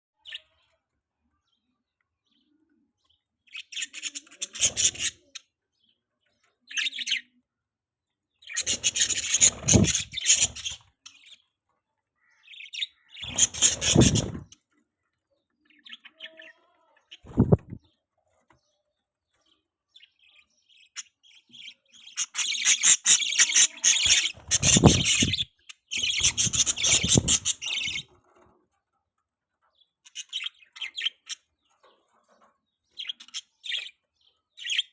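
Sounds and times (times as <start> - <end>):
baby budgerigar chirping: 3.5 - 5.6, 6.7 - 7.3, 8.4 - 11.4, 12.2 - 14.5, 20.3 - 28.1, 30.1 - 31.6.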